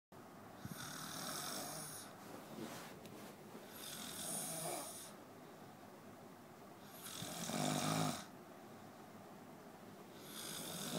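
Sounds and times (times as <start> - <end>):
heavy snoring: 0.6 - 2.2, 3.7 - 5.2, 6.9 - 8.3, 10.1 - 10.9.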